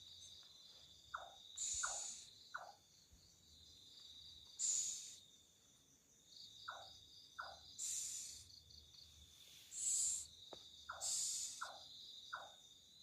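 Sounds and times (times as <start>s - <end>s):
cricket and insect chorus: 0.0s - 13.0s
night bird hissing screeches: 1.6s - 2.4s, 4.5s - 5.3s, 7.4s - 8.7s, 9.4s - 11.9s.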